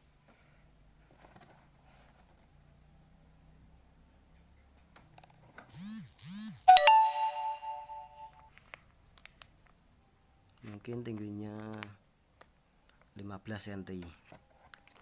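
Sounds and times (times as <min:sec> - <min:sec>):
bright bell-like ding: 0:06.7 - 0:08.4.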